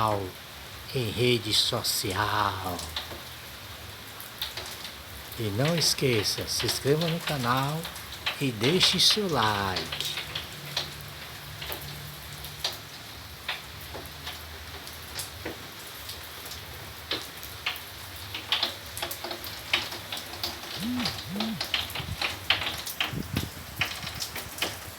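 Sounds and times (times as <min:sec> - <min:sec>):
rain falling: 0:00.0 - 0:24.9
raindrops ticking on surfaces: 0:00.0 - 0:24.9.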